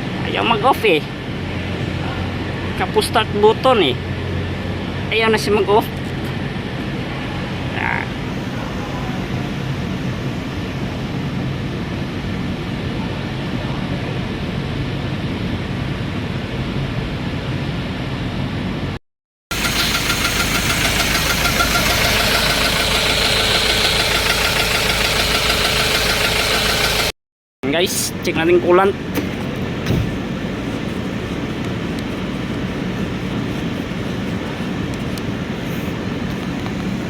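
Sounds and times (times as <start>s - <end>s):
knocking engine idling: 19.5s - 27.2s.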